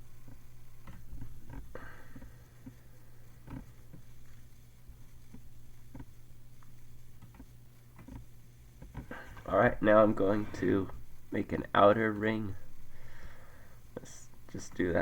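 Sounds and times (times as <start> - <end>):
low electrical hum: 0.0 - 15.0
computer mouse clicks: 3.4 - 9.5.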